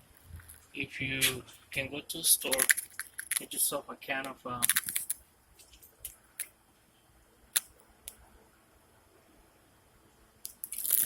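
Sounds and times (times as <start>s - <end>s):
small hard objects clicking: 2.4s - 3.6s, 4.6s - 6.5s, 10.4s - 11.0s.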